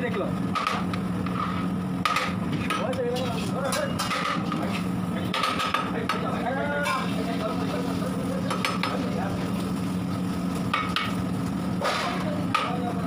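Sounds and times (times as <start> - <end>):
utensils knocking against a pot: 2.0 - 7.1, 8.5 - 9.0, 11.8 - 12.8.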